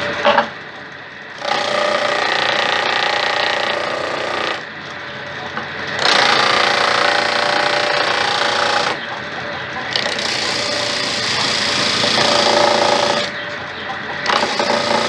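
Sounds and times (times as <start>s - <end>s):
disc sander running: 0.0s - 15.0s
wood grinding on sanding disc: 1.4s - 4.7s, 6.0s - 9.1s, 9.8s - 13.4s, 14.2s - 15.0s.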